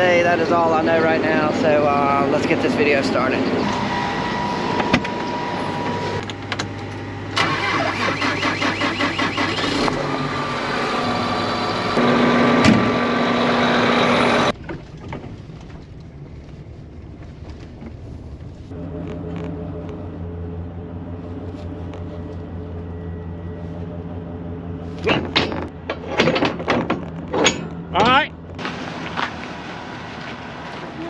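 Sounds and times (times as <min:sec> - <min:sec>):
engine cranking and running: 0:00.0 - 0:16.3, 0:18.7 - 0:31.0
quiet steady engine hum: 0:00.0 - 0:31.0.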